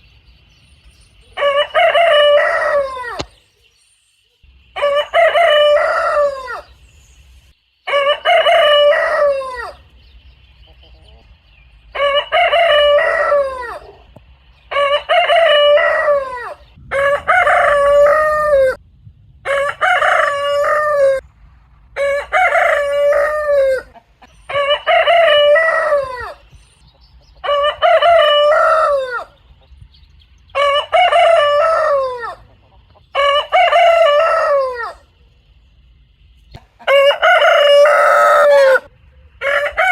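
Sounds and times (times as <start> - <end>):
rooster crowing: 1.3 - 3.3, 4.8 - 6.7, 7.9 - 9.8, 12.0 - 14.1, 14.7 - 18.8, 19.4 - 21.2, 22.0 - 26.4, 27.4 - 29.4, 30.5 - 32.5, 33.1 - 35.1, 36.8 - 39.9.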